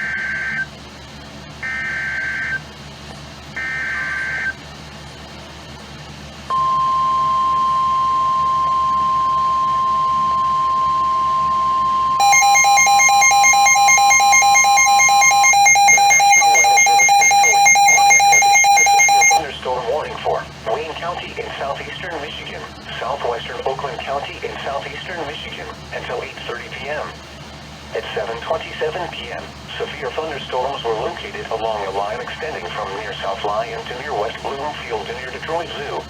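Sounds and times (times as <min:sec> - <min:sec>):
pulsing electronic beeping alarm: 0:00.0 - 0:00.7, 0:01.6 - 0:02.6, 0:03.6 - 0:04.6, 0:06.5 - 0:19.5
steady warning alarm tone: 0:00.0 - 0:00.7, 0:01.6 - 0:02.6, 0:03.6 - 0:04.6, 0:06.5 - 0:19.6.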